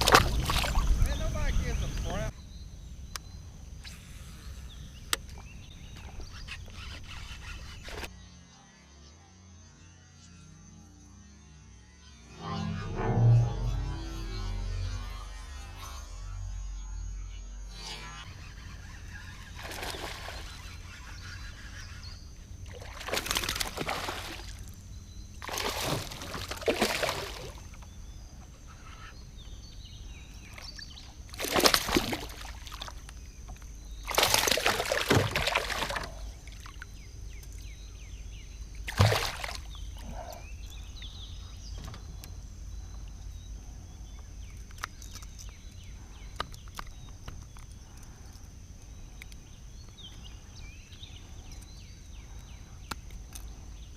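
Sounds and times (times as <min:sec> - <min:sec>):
water sloshing and splashing: 0:00.0 - 0:01.1, 0:19.5 - 0:20.7, 0:22.6 - 0:24.8, 0:25.4 - 0:27.8, 0:30.5 - 0:36.9, 0:38.8 - 0:40.0
steady low rumble: 0:12.2 - 0:16.3.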